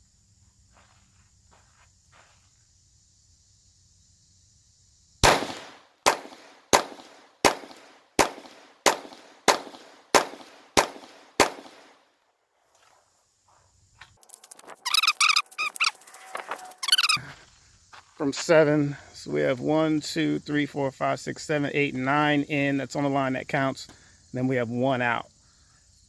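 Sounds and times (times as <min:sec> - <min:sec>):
pistol shots with echo: 0:05.2 - 0:12.0.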